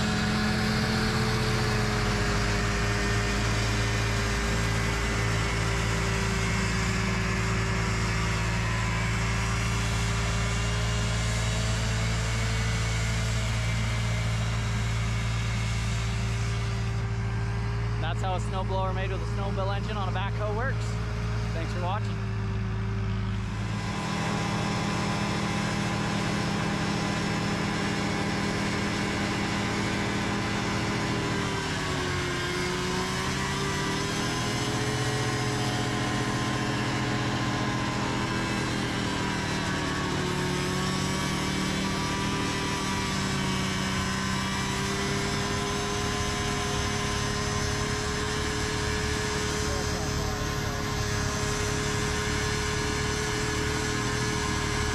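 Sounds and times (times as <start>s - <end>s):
snowblower engines running: 0.0s - 54.9s.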